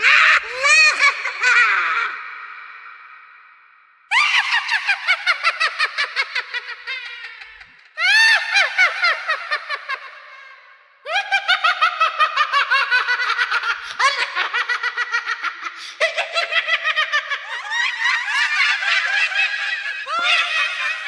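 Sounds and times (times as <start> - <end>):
high-pitched cackling laughter: 4.1 - 10.4, 11.1 - 21.0.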